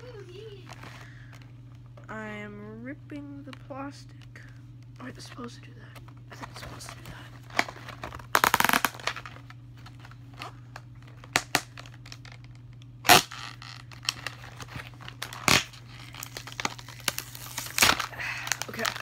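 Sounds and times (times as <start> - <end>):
plastic packaging crinkling and tearing: 6.3 - 19.0.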